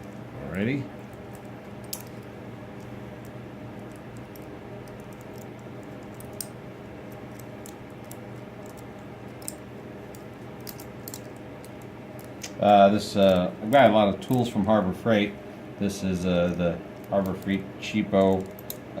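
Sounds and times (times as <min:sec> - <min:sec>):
steady low hum: 0:00.0 - 0:19.0
metal parts clicking: 0:01.3 - 0:02.2, 0:07.1 - 0:12.4.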